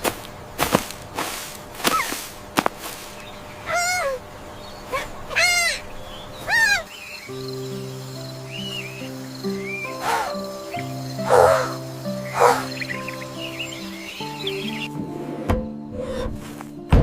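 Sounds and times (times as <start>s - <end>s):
chirp-like animal calls: 3.1s - 15.0s
soft background music: 6.8s - 17.0s.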